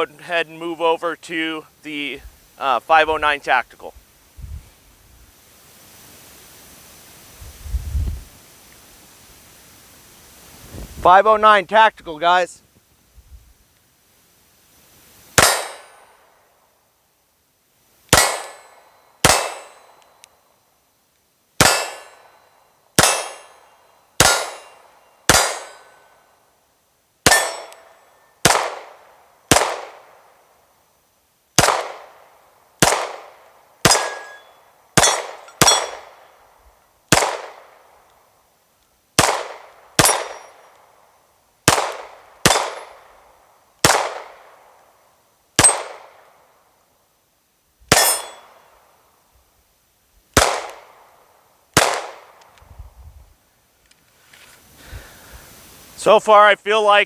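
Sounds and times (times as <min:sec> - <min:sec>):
pistol shots: 0:15.4 - 0:16.1, 0:18.1 - 0:20.0, 0:21.6 - 0:22.4, 0:23.0 - 0:26.0, 0:27.2 - 0:30.1, 0:31.6 - 0:32.2, 0:32.8 - 0:34.4, 0:35.0 - 0:36.2, 0:37.1 - 0:37.8, 0:39.2 - 0:40.6, 0:41.7 - 0:43.1, 0:43.8 - 0:44.5, 0:45.6 - 0:46.2, 0:47.9 - 0:48.6, 0:50.4 - 0:51.0, 0:51.8 - 0:52.4.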